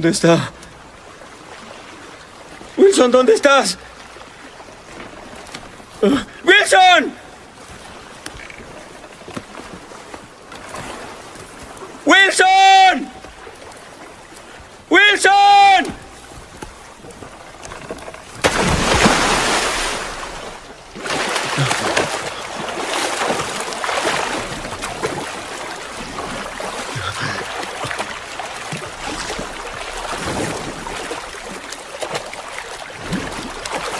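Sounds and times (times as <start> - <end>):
water washing and splashing: 0.0 - 33.9.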